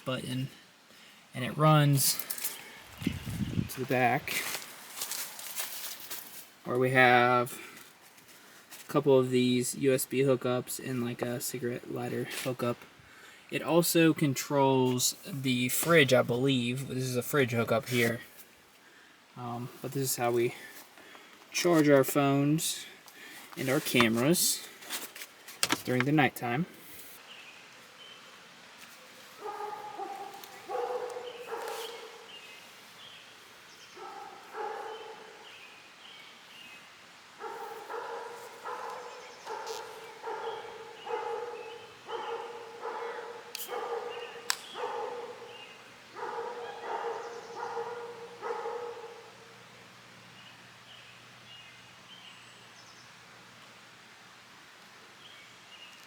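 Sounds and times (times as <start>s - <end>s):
dog barking: 29.4s - 32.3s, 34.0s - 35.4s, 37.4s - 49.6s.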